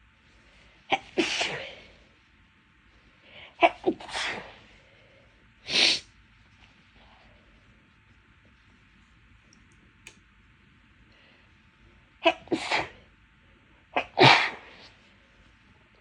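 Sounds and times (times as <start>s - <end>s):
person sneezing: 0.9s - 1.9s, 3.6s - 4.6s, 5.7s - 6.0s, 12.2s - 13.0s, 13.9s - 15.0s.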